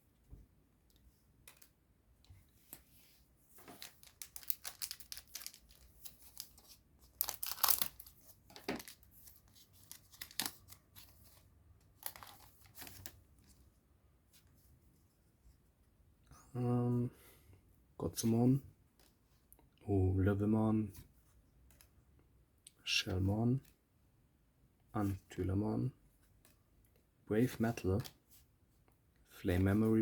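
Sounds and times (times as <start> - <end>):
foil wrapper tearing and crinkling: 3.8 - 5.8, 7.2 - 8.1.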